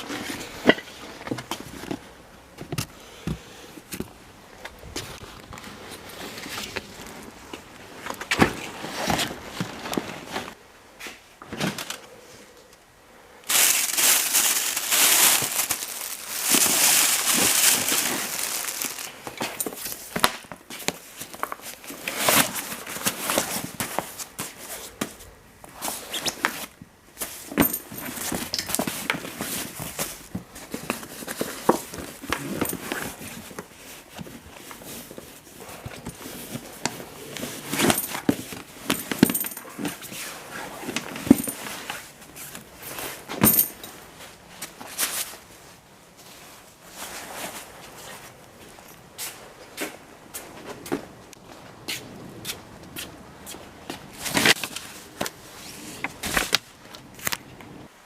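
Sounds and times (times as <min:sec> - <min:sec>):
plastic or fabric rustling: 0:04.8 - 0:12.0, 0:13.4 - 0:50.8, 0:53.0 - 0:57.3.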